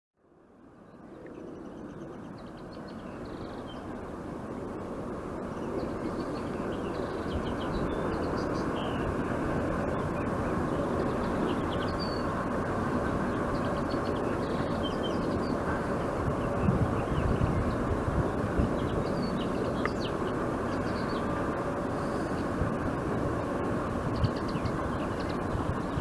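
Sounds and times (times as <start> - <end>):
low engine rumble: 2.0 - 26.0
small birds chirping: 5.5 - 9.3, 10.2 - 12.4, 13.1 - 18.0, 18.6 - 21.4, 24.0 - 26.0.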